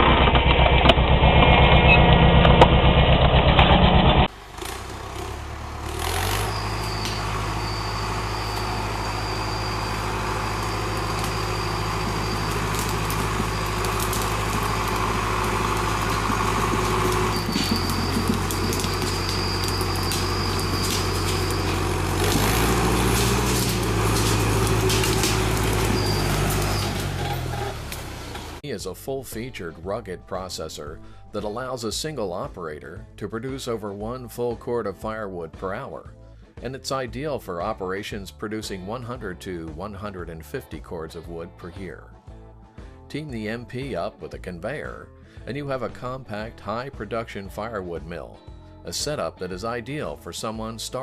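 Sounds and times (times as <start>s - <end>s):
machine engine running: 0.0s - 28.6s
thin high whine: 6.4s - 16.2s.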